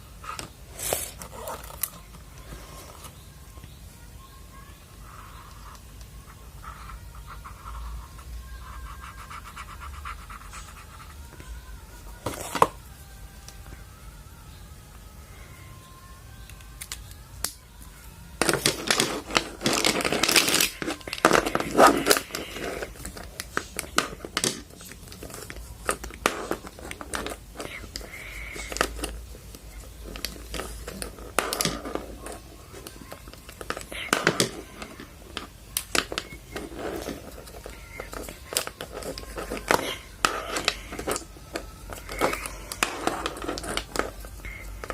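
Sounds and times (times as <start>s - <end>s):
packaging rustling: 18.4s - 44.9s.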